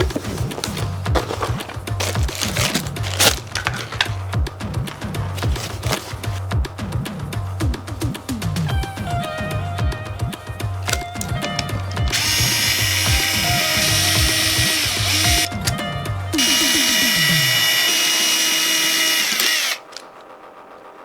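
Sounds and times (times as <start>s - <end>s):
electric screwdriver running: 0.0s - 4.0s, 12.0s - 15.5s, 16.4s - 20.0s
background music with a beat: 0.0s - 21.0s.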